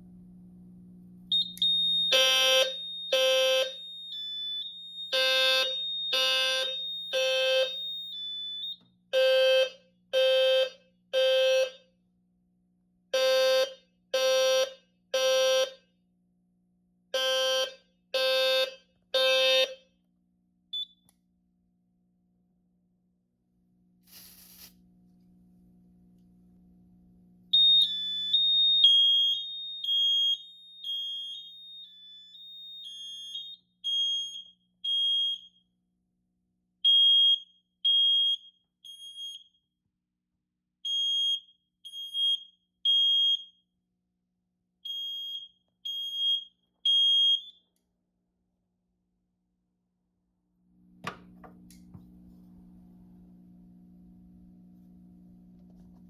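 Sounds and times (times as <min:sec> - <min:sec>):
fire alarm horn beeping: 0:01.3 - 0:11.9, 0:13.1 - 0:15.8, 0:17.1 - 0:19.9, 0:27.5 - 0:35.6, 0:36.8 - 0:39.6, 0:40.9 - 0:43.6, 0:44.9 - 0:47.7
click: 0:20.8 - 0:21.2.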